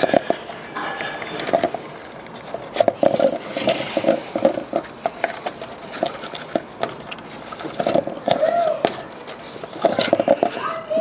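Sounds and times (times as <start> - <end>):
plastic bottle squeaking: 2.6 - 11.0.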